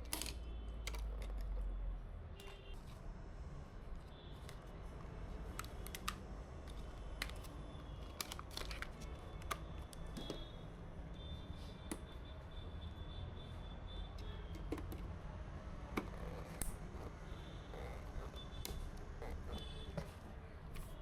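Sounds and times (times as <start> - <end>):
hands handling parts and packaging: 5.5 - 10.4.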